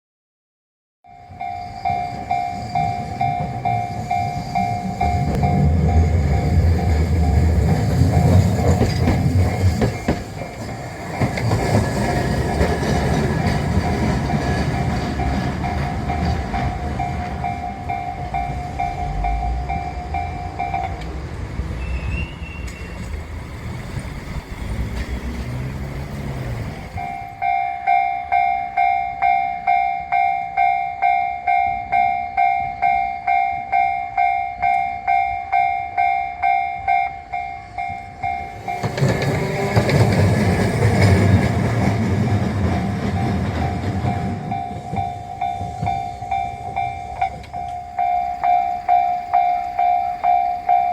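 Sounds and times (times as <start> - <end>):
level-crossing alarm bell: 1.0 - 21.1, 26.8 - 50.9
train rumbling over crossing: 1.0 - 50.9.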